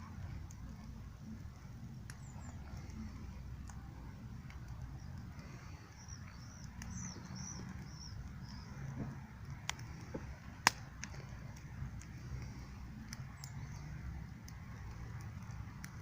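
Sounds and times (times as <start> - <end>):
bonfire crackling and popping: 0.0 - 16.0
low steady noise: 0.0 - 16.0
faint bird chirps: 4.8 - 8.9.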